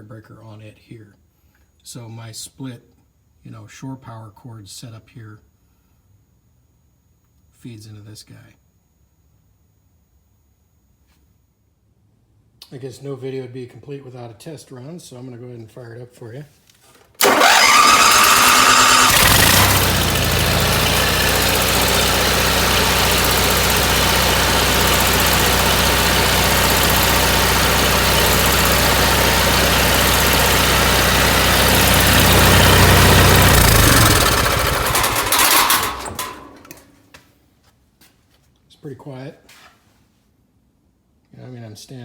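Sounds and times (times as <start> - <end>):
generator cranking and running: 17.2 - 36.9.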